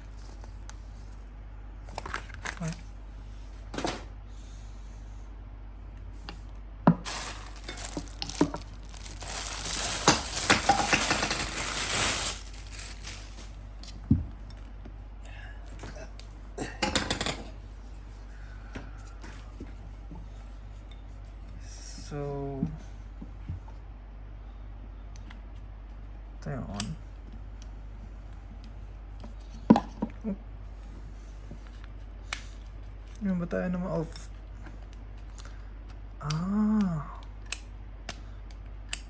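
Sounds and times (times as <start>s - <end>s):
rustling and scraping: 6.2s - 14.1s.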